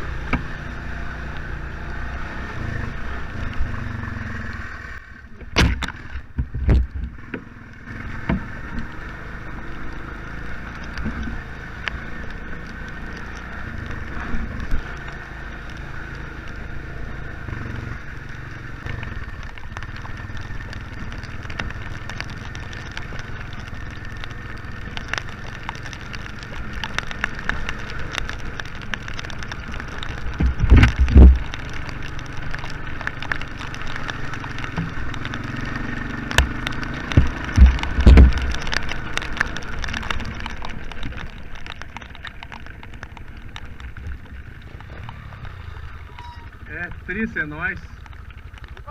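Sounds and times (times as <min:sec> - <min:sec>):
atv engine running: 0:00.0 - 0:48.9
heavy thumps and knocks: 0:37.1 - 0:38.7.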